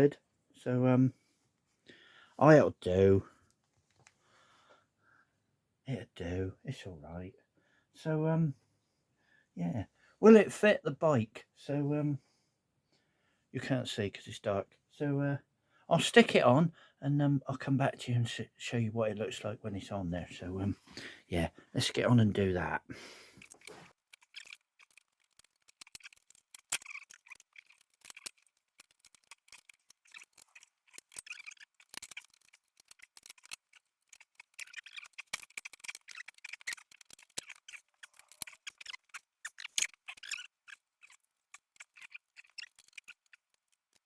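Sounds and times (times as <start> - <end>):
hands working metal parts: 22.0 - 44.0.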